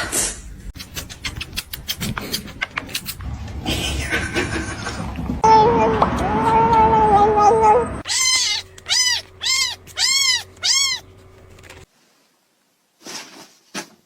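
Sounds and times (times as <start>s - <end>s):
cat meowing: 6.2s - 11.1s.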